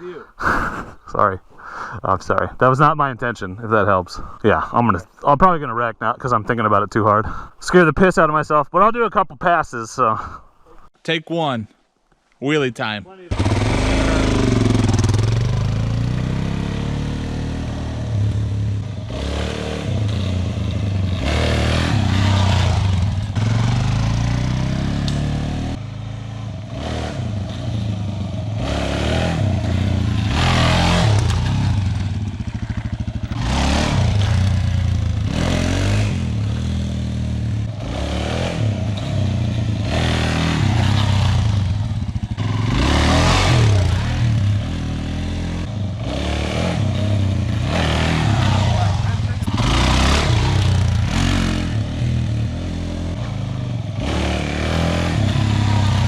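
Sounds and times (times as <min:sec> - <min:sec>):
motorcycle engine revving: 0:13.3 - 0:56.0.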